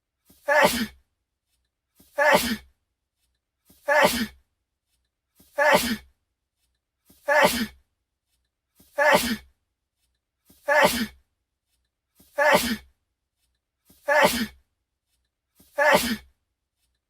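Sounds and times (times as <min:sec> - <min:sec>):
man sneezing: 0:00.4 - 0:01.0, 0:02.2 - 0:02.6, 0:03.8 - 0:04.4, 0:05.6 - 0:06.0, 0:07.2 - 0:07.8, 0:09.0 - 0:09.4, 0:10.7 - 0:11.2, 0:12.4 - 0:12.9, 0:14.1 - 0:14.6, 0:15.8 - 0:16.3.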